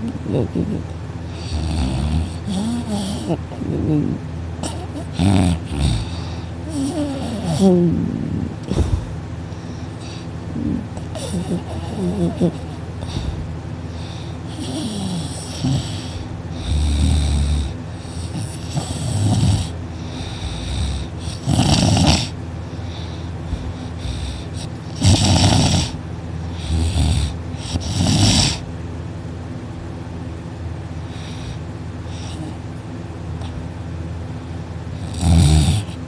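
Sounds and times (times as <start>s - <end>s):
person snoring loudly: 1.4s - 8.9s, 10.0s - 13.4s, 14.0s - 22.4s, 23.5s - 28.6s, 35.0s - 36.0s.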